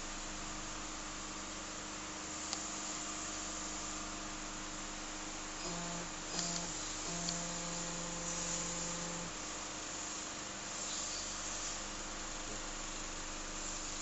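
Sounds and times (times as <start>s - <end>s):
lower machine tone: 2.2s - 10.0s
hose crimping machine humming: 5.5s - 9.7s.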